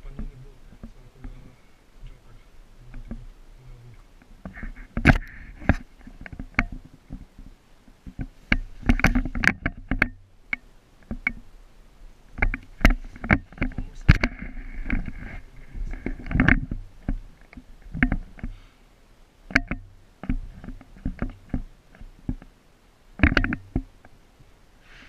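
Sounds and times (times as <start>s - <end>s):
faint hiss: 0.0s - 25.0s
sharp clicks and knocks: 2.9s - 3.3s, 4.0s - 11.5s, 12.3s - 18.6s, 19.5s - 22.5s, 23.2s - 24.2s.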